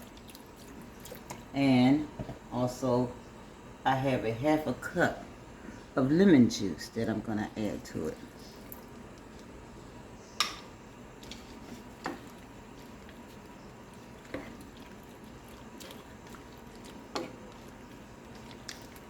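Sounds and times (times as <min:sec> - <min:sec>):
sauce simmering in a pan: 0:08.4 - 0:19.0.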